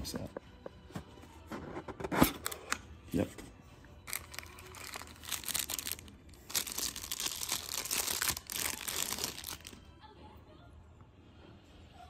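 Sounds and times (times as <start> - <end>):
packaging crinkling and tearing: 4.0 - 9.8.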